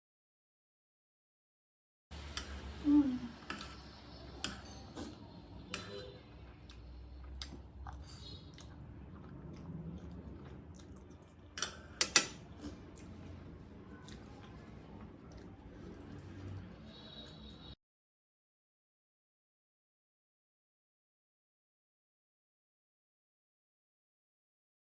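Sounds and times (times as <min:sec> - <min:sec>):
person chewing noodles: 0:06.5 - 0:17.4.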